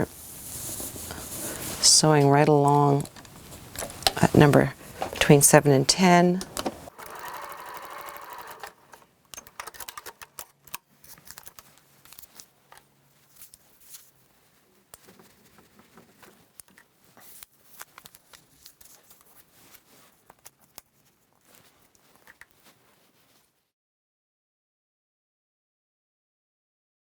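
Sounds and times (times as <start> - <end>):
sewing machine stitching: 2.2 - 10.4.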